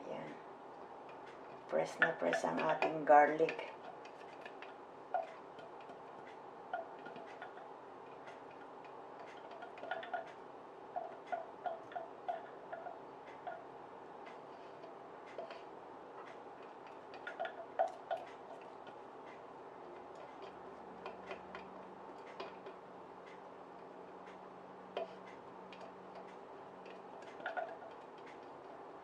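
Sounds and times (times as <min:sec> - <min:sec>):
utensil tapping against a bowl: 0:01.8 - 0:10.4.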